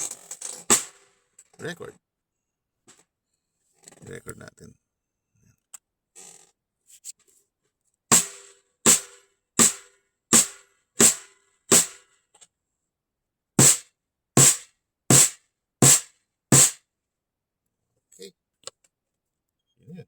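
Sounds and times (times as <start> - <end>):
snare drum hits: 0.7 - 1.0, 8.1 - 12.0, 13.6 - 13.8, 14.4 - 16.8.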